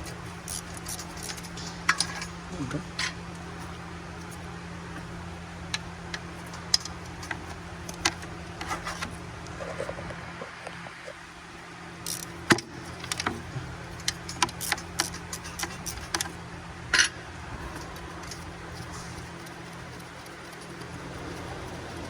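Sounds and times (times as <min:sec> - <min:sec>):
steady low hum: 0:00.0 - 0:22.0
metal tools clinking: 0:00.4 - 0:03.4.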